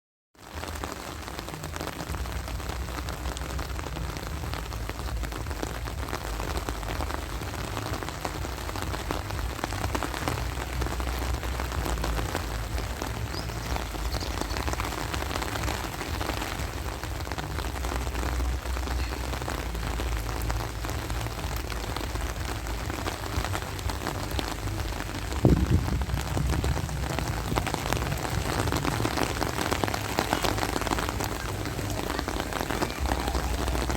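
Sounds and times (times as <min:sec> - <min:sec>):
steady rain falling: 0:00.4 - 0:33.9
continuous low rumble: 0:00.6 - 0:33.9
low thump: 0:25.4 - 0:26.6.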